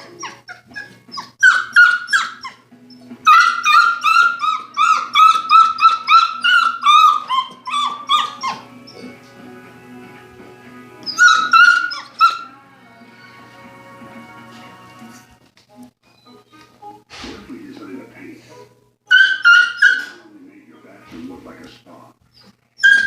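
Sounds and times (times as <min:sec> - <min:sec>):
young dog whining and yelping: 0:00.0 - 0:09.2, 0:11.0 - 0:12.6, 0:19.1 - 0:20.2, 0:22.3 - 0:23.0
faint television music: 0:00.0 - 0:23.0.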